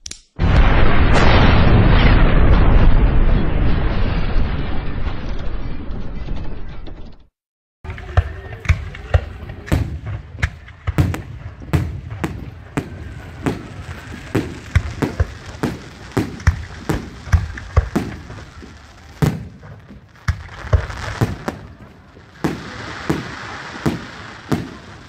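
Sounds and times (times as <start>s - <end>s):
firecrackers banging: 7.8s - 25.0s.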